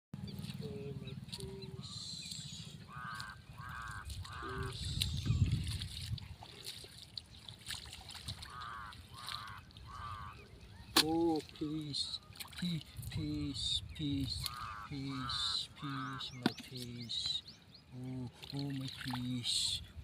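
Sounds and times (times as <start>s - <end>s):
animal calling: 0.6s - 5.4s, 8.4s - 11.0s, 14.4s - 17.2s.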